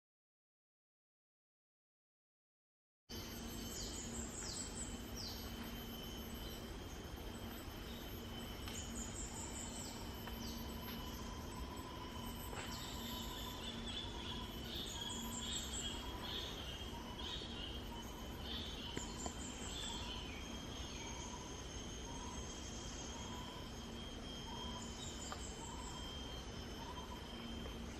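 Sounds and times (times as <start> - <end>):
faint low hum: 3.1 - 27.9
high-pitched insect drone: 3.1 - 27.9
birds whistling: 7.8 - 27.9.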